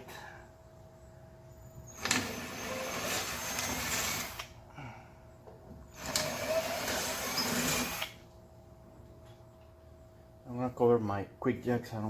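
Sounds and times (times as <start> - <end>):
power drill boring fiberglass: 1.9 - 4.5, 6.0 - 8.2.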